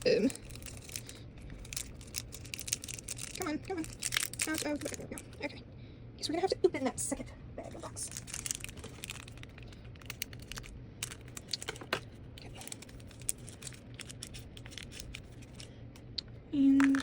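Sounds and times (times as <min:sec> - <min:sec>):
bag crinkling and tearing: 0:00.2 - 0:05.3, 0:08.1 - 0:12.0
small rocks clicking: 0:00.3 - 0:05.3, 0:08.1 - 0:12.0.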